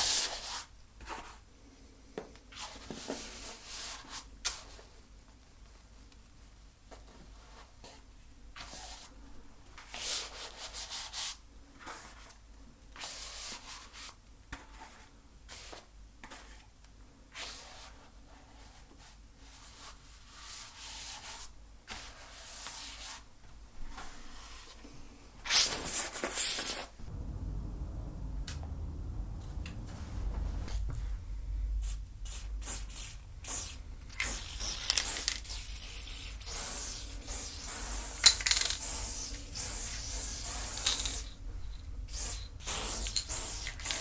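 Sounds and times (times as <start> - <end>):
paint brush rubbing on canvas: 31.8 - 38.2.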